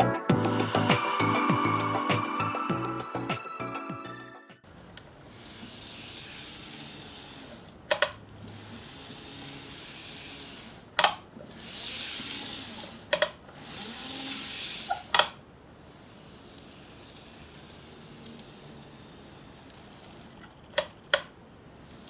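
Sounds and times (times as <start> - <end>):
model train motor whirring: 4.9 - 22.0
sharp clicks: 7.8 - 8.2.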